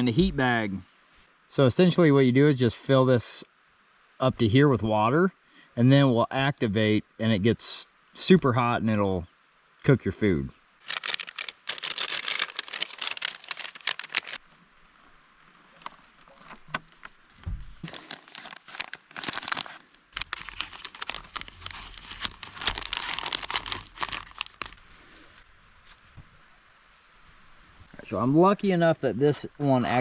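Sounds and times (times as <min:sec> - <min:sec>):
plastic crackles: 0:10.8 - 0:14.4, 0:15.7 - 0:25.4
plastic pouches crinkling: 0:10.8 - 0:14.4, 0:17.8 - 0:25.4.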